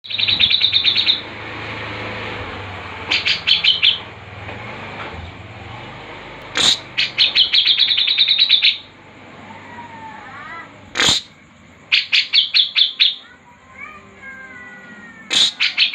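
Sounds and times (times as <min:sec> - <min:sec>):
songbird chirping: 0:00.0 - 0:01.3, 0:03.0 - 0:04.2, 0:06.5 - 0:15.9.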